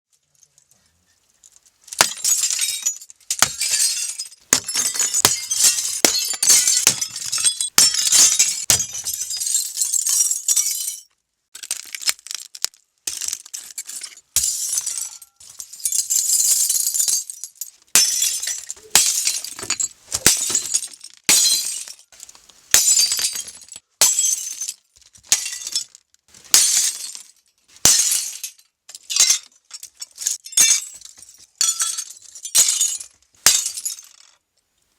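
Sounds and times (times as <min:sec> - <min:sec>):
shards tinkling: 0:01.4 - 0:11.1, 0:13.1 - 0:22.2
glass smashing: 0:01.8 - 0:22.1, 0:22.7 - 0:34.3.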